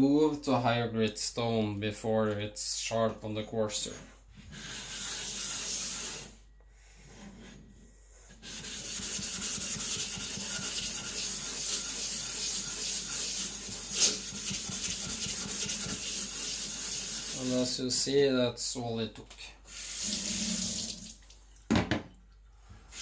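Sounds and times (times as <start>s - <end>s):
plate rubbing on a whetstone: 4.5s - 6.3s, 8.3s - 17.6s.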